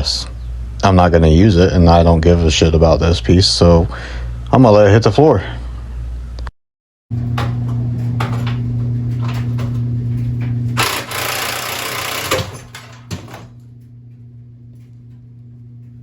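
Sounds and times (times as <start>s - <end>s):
power tool humming: 10.8s - 13.5s.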